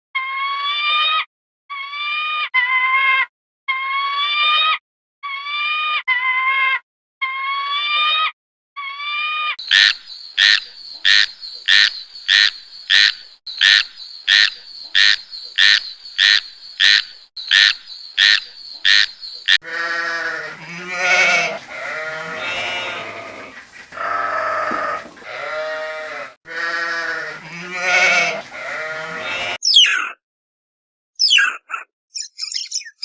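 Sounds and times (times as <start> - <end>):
pitched animal calls: 19.6 - 29.6.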